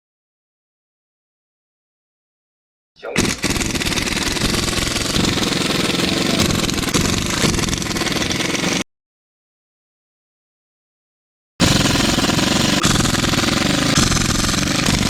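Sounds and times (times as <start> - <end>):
rattling clatter: 3.2 - 8.8.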